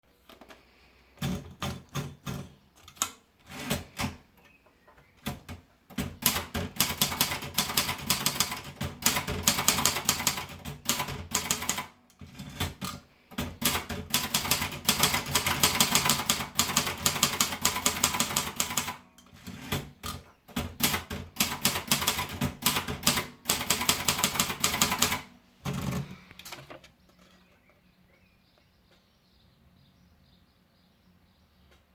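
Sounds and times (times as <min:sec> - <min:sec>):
manual typewriter typing: 0:01.2 - 0:04.3, 0:05.2 - 0:26.8.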